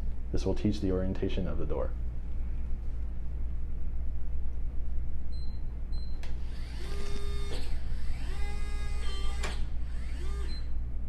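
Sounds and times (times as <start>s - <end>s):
lock motor whirring: 6.2s - 10.8s.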